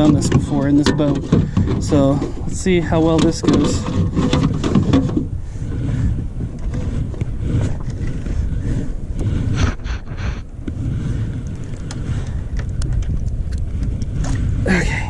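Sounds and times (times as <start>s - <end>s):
knocks clicks and rustles: 0.0s - 8.4s
wind rumble on microphone: 0.0s - 15.0s.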